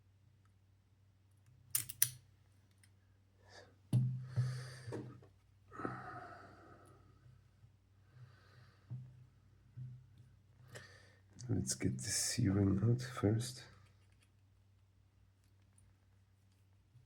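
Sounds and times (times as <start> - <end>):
lock parts clicking and knocking: 1.7 - 2.2
breathy exhales: 5.7 - 6.9.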